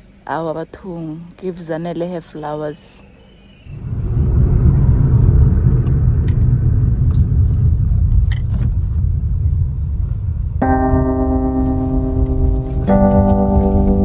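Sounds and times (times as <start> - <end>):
low rumble: 3.7 - 14.0.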